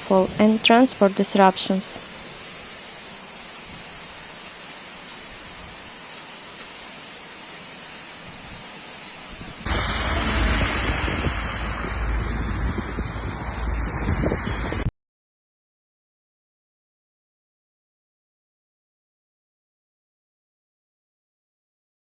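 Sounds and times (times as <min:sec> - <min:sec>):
heavy rain hiss: 0:00.0 - 0:12.4
deep rumble: 0:09.7 - 0:14.9.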